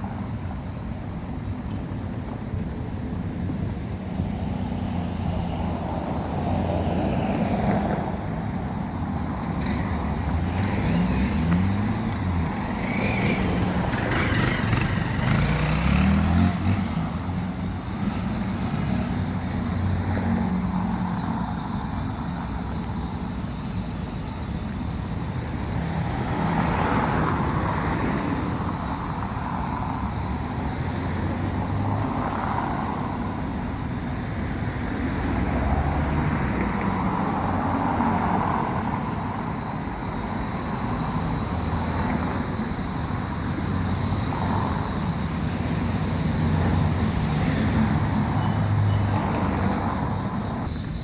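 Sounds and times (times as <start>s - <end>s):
vehicle rumble: 0.0s - 51.0s.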